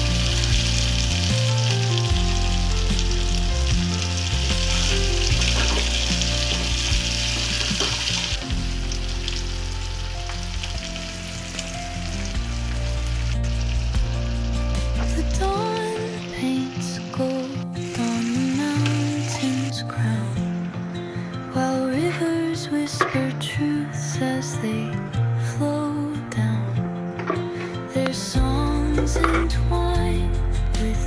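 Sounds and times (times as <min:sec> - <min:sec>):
food sizzling in hot oil: 0:00.0 - 0:19.7
background music: 0:00.0 - 0:31.0.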